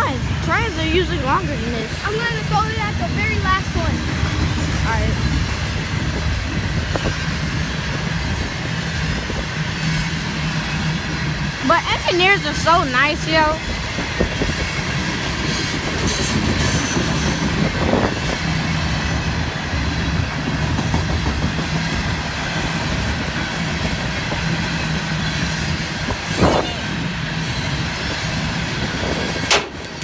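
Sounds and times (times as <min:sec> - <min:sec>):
freight train cars rumbling on rails: 0:00.0 - 0:30.0
sharp metal clank: 0:29.5 - 0:30.0.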